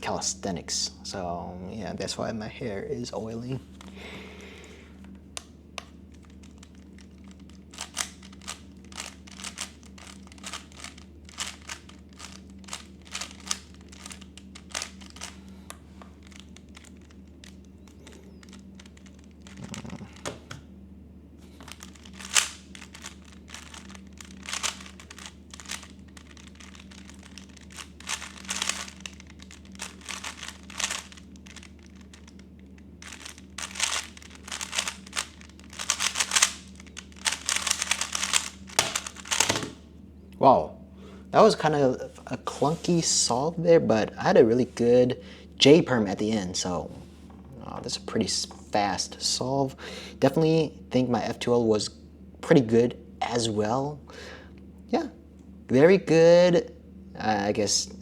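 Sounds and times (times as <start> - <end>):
low steady hum: 0.0 - 58.0
puzzle cube clicking: 5.8 - 15.4, 16.2 - 17.7, 21.6 - 32.4, 33.0 - 39.7.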